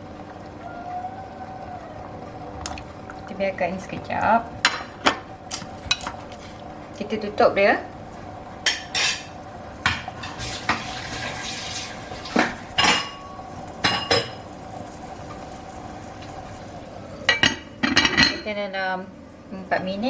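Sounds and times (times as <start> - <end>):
faint steady hum: 0.0 - 20.0
metal utensils clattering on pot: 8.6 - 11.0, 12.3 - 13.2, 17.3 - 18.5.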